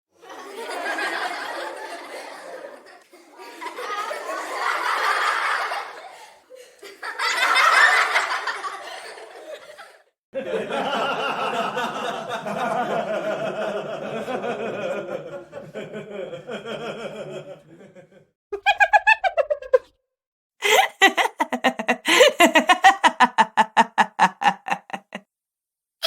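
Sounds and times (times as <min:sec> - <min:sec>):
laughter sound effects: 0:00.3 - 0:19.9, 0:20.6 - 0:25.2
dull-sounding laugh: 0:10.4 - 0:19.9, 0:20.6 - 0:25.2.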